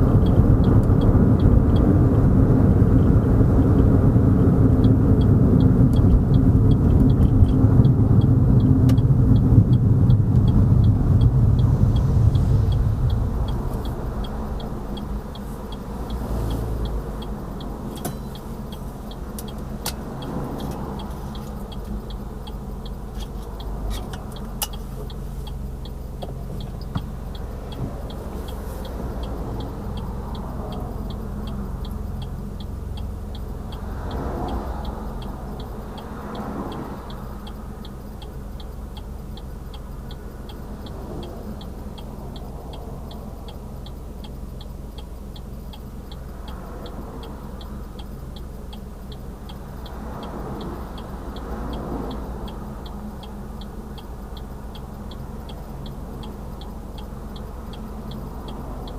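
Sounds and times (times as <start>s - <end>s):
road and engine rumble: 0.0s - 58.9s
turn signal ticking: 0.0s - 58.9s.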